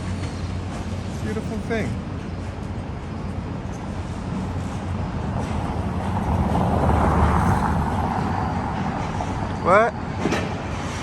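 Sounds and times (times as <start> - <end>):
traffic rumble: 1.0 - 11.0
vehicle passing: 5.6 - 9.6.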